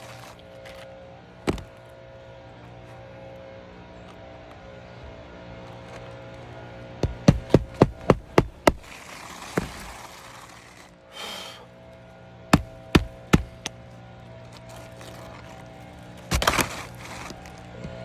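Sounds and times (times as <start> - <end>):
hammer striking nails: 7.0 - 8.9, 12.6 - 13.7.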